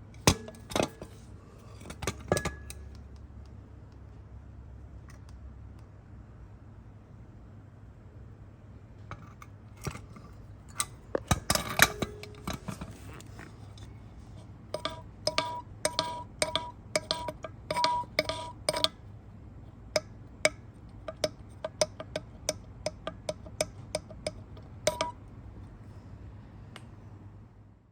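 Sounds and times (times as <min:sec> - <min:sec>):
metal parts clinking and tapping: 0:00.2 - 0:03.0, 0:09.1 - 0:13.9, 0:14.8 - 0:18.9, 0:20.0 - 0:25.2.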